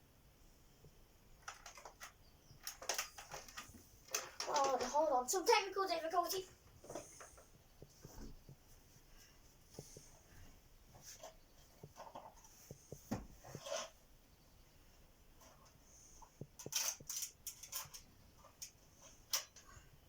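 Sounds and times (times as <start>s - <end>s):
vacuum cleaner being handled: 1.4s - 5.1s.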